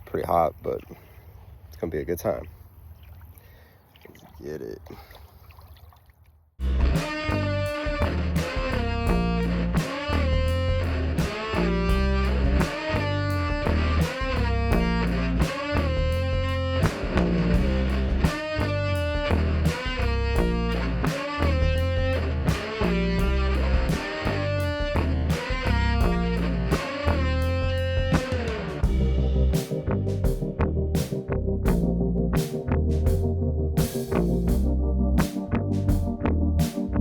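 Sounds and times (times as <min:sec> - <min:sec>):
bass: 0:00.0 - 0:03.0, 0:06.6 - 0:37.0
electric guitar: 0:06.6 - 0:30.4
steady drum beat: 0:06.6 - 0:32.0.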